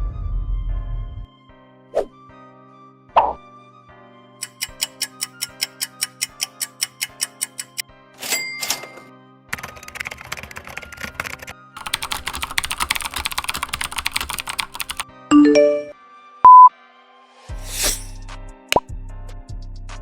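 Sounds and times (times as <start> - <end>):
quiet background music: 0.5 - 19.0
computer keyboard typing: 4.4 - 7.8, 9.5 - 15.9
loud censor bleep: 16.5 - 16.7
short rising beeps: 16.5 - 16.7.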